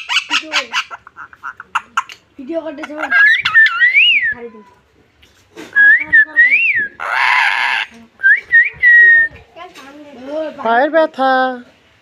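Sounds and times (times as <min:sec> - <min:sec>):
parrot harsh raspy call: 0:00.0 - 0:02.2, 0:02.8 - 0:04.8, 0:07.0 - 0:08.0
parrot whistling: 0:03.0 - 0:04.5.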